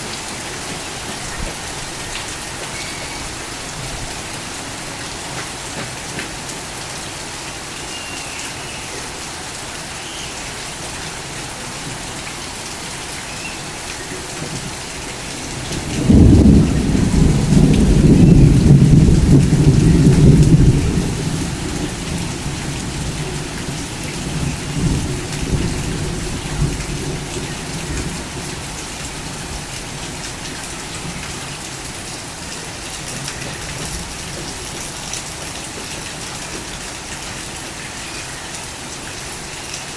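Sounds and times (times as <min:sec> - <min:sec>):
heavy rain falling: 0:00.0 - 0:39.9
thunder rumbling: 0:14.2 - 0:31.3.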